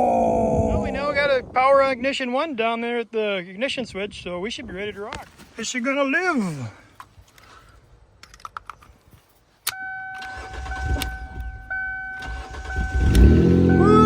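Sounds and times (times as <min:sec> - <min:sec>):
keys clicking in ignition: 0:09.7 - 0:13.3
dashboard warning tone: 0:09.8 - 0:14.0
car engine cranking and starting: 0:10.1 - 0:14.0.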